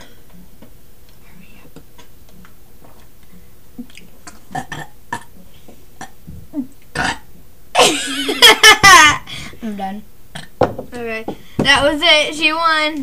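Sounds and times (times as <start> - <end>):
person burping: 3.8 - 5.4, 6.0 - 7.3, 10.3 - 10.5.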